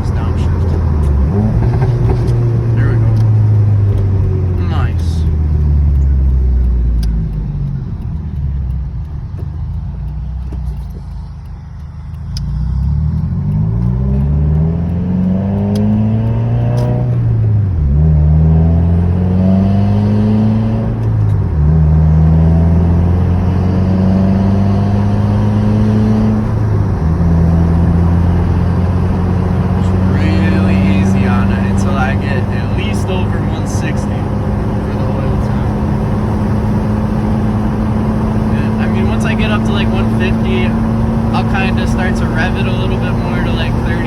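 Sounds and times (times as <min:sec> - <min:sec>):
car engine accelerating through gears: 0:00.0 - 0:44.0.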